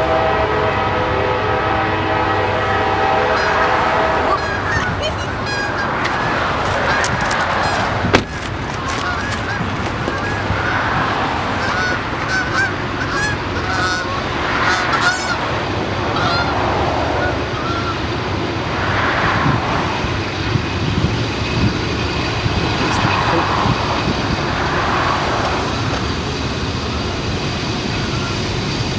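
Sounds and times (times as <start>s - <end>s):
steady low rumble: 0.0s - 28.9s
birds honking: 1.8s - 18.2s, 24.7s - 28.9s.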